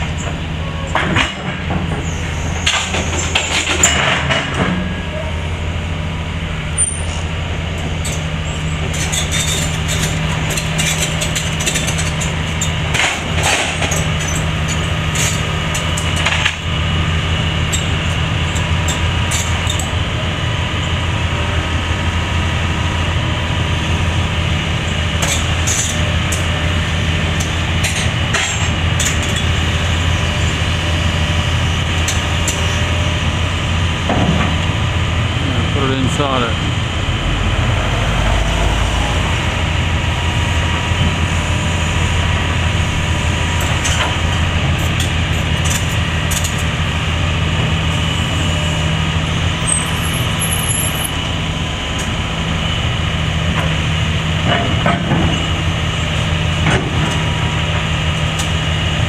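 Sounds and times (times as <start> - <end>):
excavator diesel engine droning: 0.0 - 59.0
metallic knocks and clanks: 43.0 - 46.8.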